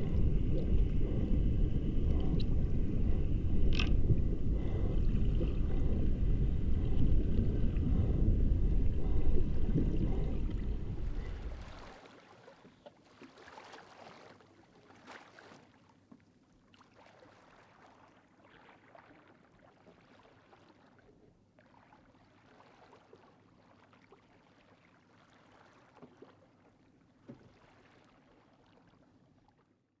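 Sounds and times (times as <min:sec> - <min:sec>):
loud low rumble: 0:00.0 - 0:11.7
water splashing and gurgling: 0:00.0 - 0:29.5.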